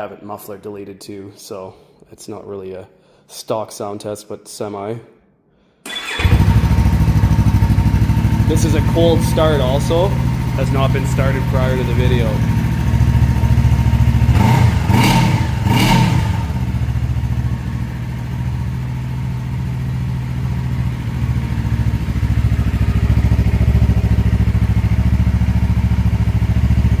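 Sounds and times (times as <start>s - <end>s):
motorcycle engine idling: 6.0s - 27.0s
motorcycle throttle blips: 6.0s - 27.0s.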